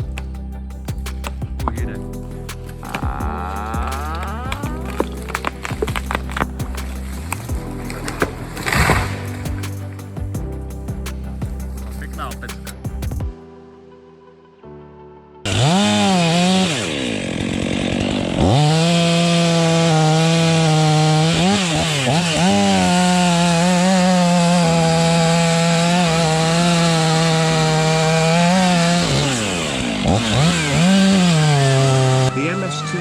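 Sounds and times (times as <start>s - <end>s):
chainsaw revving: 1.2s - 9.9s, 15.5s - 33.0s.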